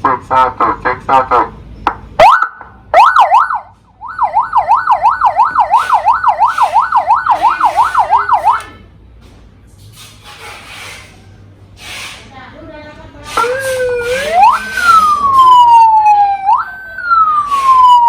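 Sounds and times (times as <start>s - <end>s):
electronic siren yelp: 2.2s - 8.8s, 13.4s - 18.0s.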